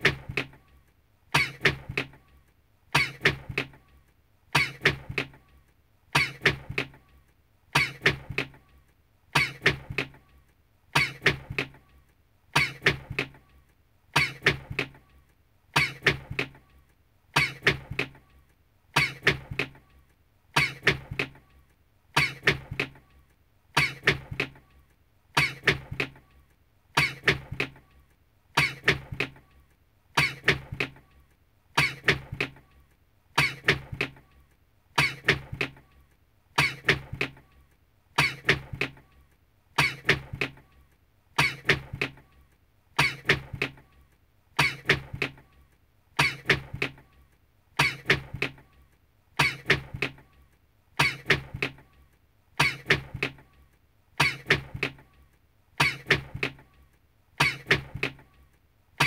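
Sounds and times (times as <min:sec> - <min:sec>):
person sneezing: 0:04.6 - 0:05.0, 0:07.8 - 0:08.2, 0:09.4 - 0:09.8, 0:11.0 - 0:11.4, 0:12.6 - 0:13.0, 0:14.1 - 0:14.6, 0:15.8 - 0:16.2, 0:17.4 - 0:17.8, 0:19.0 - 0:19.4, 0:20.6 - 0:21.1, 0:22.2 - 0:22.6, 0:23.8 - 0:24.2, 0:27.0 - 0:27.4, 0:30.2 - 0:30.6, 0:36.6 - 0:37.0, 0:39.8 - 0:40.2, 0:43.0 - 0:43.4, 0:44.6 - 0:45.0, 0:46.2 - 0:46.6, 0:47.8 - 0:48.2, 0:49.4 - 0:49.8, 0:51.0 - 0:51.4, 0:52.6 - 0:53.0, 0:54.2 - 0:54.6, 0:55.8 - 0:56.2, 0:57.4 - 0:57.9.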